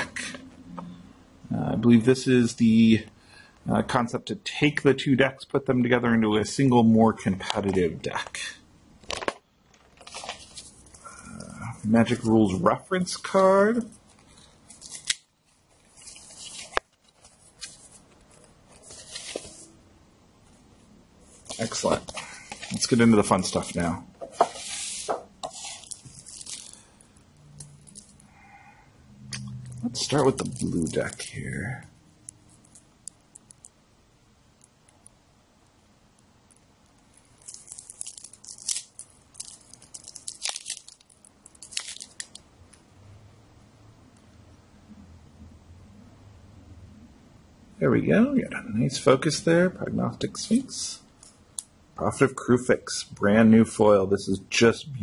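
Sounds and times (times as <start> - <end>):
plastic wrapping crinkling and tearing: 9.0 - 12.3, 13.2 - 19.7, 21.4 - 24.0, 24.6 - 28.2, 29.8 - 31.7, 36.5 - 42.5
paper and cardboard rustling: 9.9 - 11.0, 13.6 - 19.7, 21.2 - 26.8, 30.0 - 31.5.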